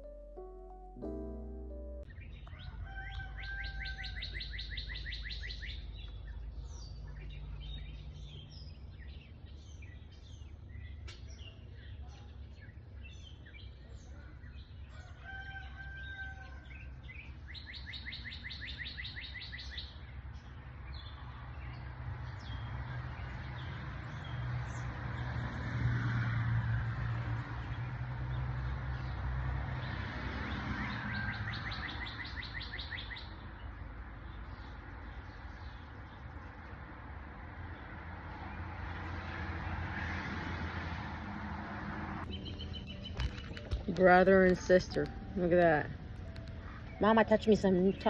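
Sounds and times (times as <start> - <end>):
bird trills: 2.1 - 6.2, 17.1 - 20.0, 30.8 - 33.4, 42.3 - 43.9.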